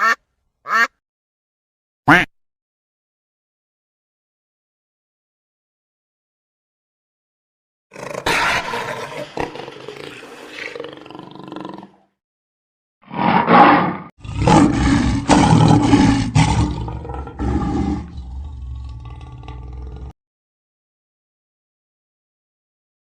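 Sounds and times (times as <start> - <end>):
big cat roaring: 7.9 - 12.0, 13.1 - 20.2.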